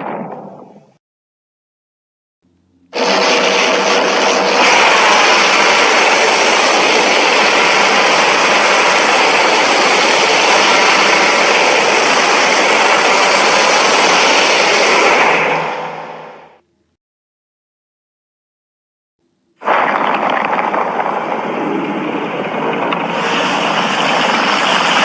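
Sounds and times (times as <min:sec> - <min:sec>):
loud rushing blast: 0:03.0 - 0:16.6, 0:19.6 - 0:25.0.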